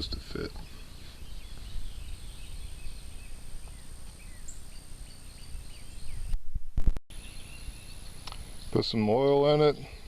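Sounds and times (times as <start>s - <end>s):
birds chirping: 0.0s - 6.4s, 7.1s - 10.0s
sharp click: 8.2s - 8.4s.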